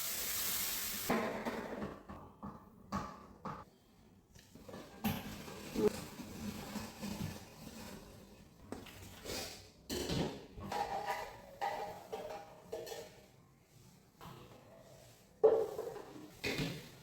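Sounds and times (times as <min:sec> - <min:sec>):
household items knocking and clattering: 0:01.1 - 0:03.7.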